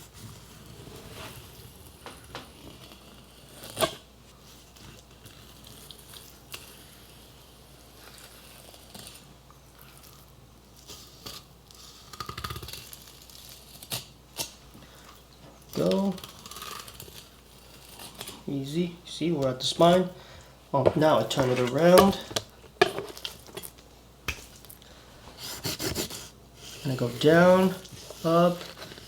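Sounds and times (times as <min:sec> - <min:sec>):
knife slicing through fish: 0:25.4 - 0:26.8.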